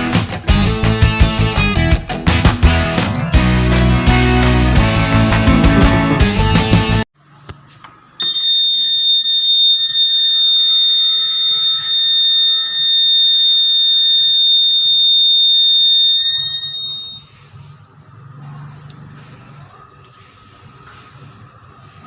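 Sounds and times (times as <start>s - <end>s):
door alarm high-pitched tone: 8.2s - 17.5s.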